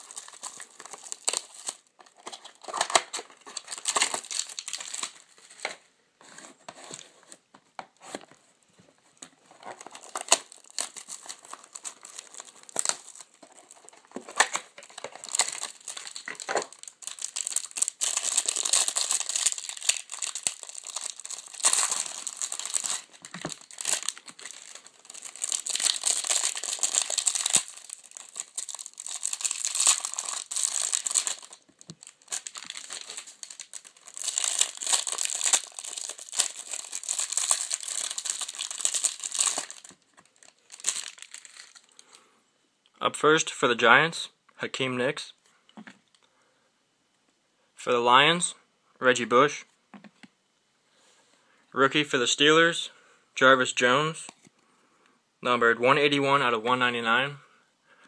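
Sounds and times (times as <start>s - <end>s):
plastic wrapping crinkling and tearing: 0.0s - 5.7s, 9.5s - 42.1s.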